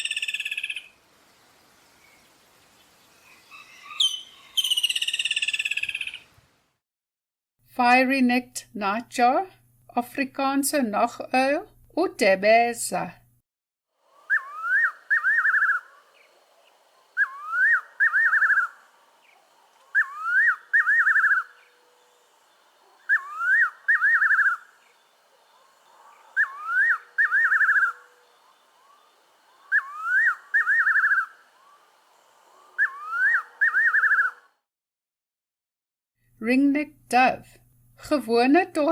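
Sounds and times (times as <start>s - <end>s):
nightjar whistled song: 0.0s - 1.0s, 3.2s - 6.3s, 14.1s - 34.6s.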